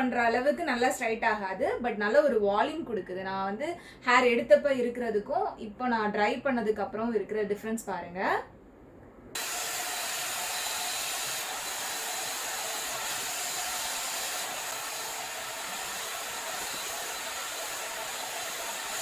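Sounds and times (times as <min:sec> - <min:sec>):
hot air brush blowing: 0:09.4 - 0:19.0.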